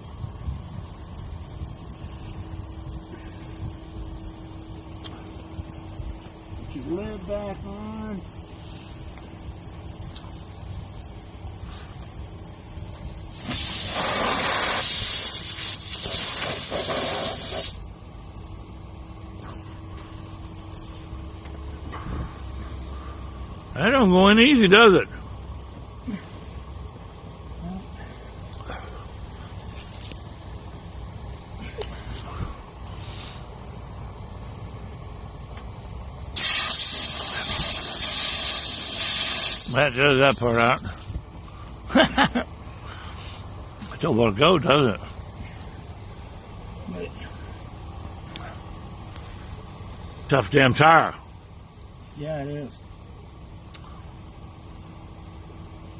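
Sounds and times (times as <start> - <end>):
air hissing from punctured tire: 0.0 - 18.6, 19.2 - 23.7, 31.4 - 34.2, 36.3 - 41.8.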